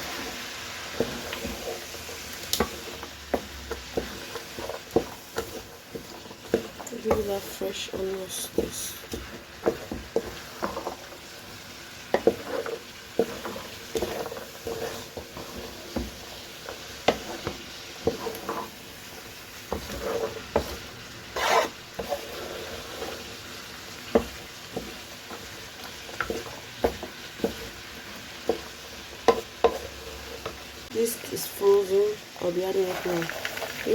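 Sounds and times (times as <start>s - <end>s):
spoon scraping pan: 0.0s - 33.9s
vegetables sizzling in frying pan: 0.0s - 33.9s.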